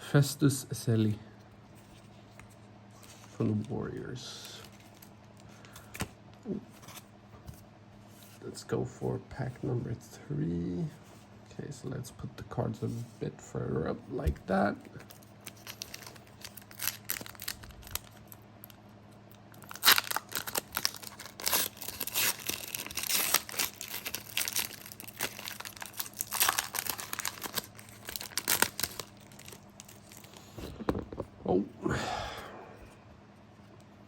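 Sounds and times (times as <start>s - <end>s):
wrapper crinkling and tearing: 15.0s - 18.8s, 19.5s - 30.5s.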